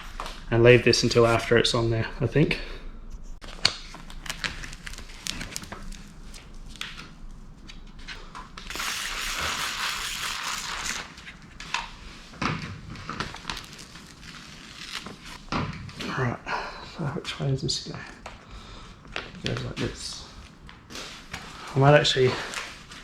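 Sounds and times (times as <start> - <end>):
backing tape peeling crackle: 3.3 - 15.5.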